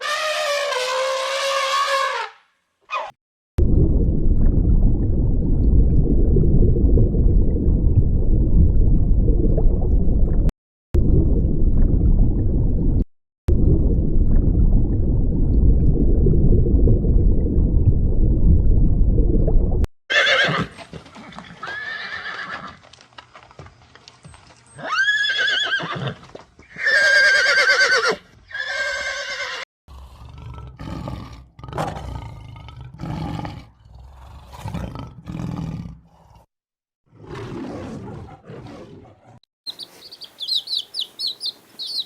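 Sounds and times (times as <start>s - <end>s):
horse whinnying: 20.1s - 20.8s, 21.6s - 22.8s, 24.8s - 29.6s.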